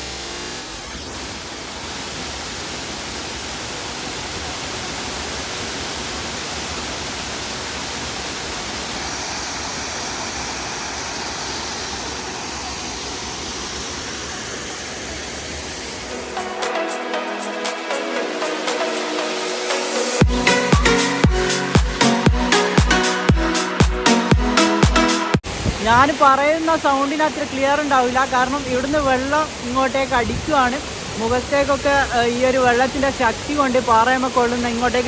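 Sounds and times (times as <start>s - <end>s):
waterfall rushing: 0.0s - 35.0s
background music: 16.1s - 25.4s.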